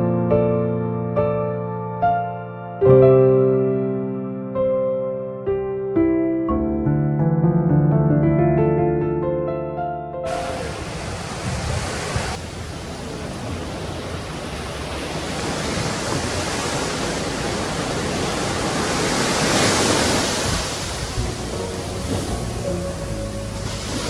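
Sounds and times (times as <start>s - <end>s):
waves breaking on beach: 10.3s - 24.0s.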